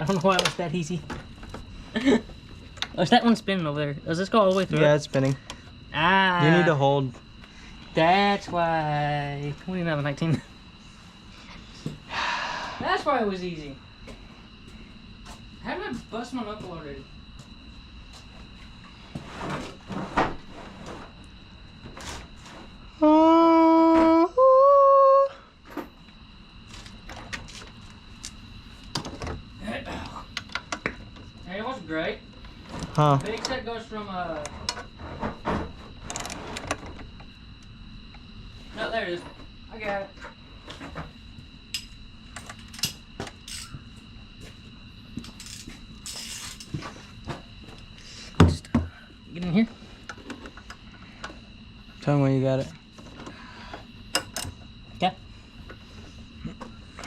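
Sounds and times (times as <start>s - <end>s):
person humming held notes: 23.0s - 25.4s.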